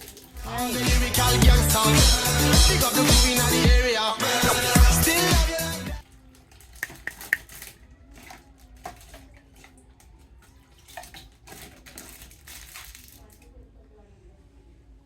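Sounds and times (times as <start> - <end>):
plastic toy figures clicking: 6.4 - 7.8.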